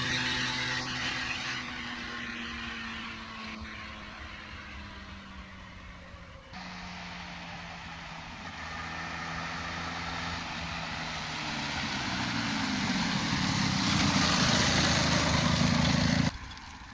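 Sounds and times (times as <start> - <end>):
motorcycle engine running hard: 0.0 - 16.4.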